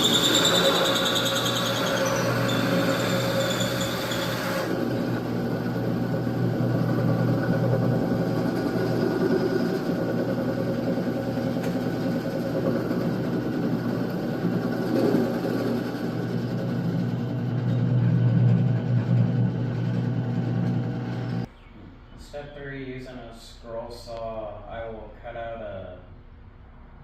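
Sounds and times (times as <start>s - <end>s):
hole saw cutting wood: 0.0s - 21.5s
power drill motor drone: 0.0s - 21.5s.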